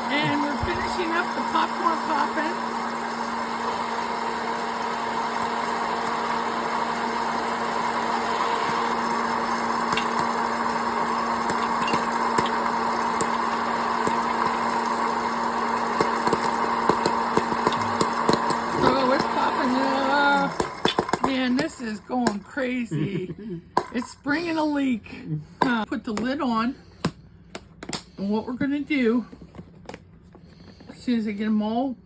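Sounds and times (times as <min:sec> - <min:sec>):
popcorn kernels popping: 0:00.0 - 0:22.5
popcorn popper fan hum: 0:00.0 - 0:28.4.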